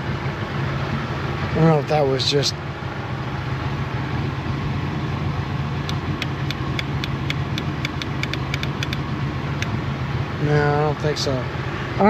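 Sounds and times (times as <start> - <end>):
outboard motor idling: 0.0 - 12.0
sharp clicks: 5.8 - 9.8.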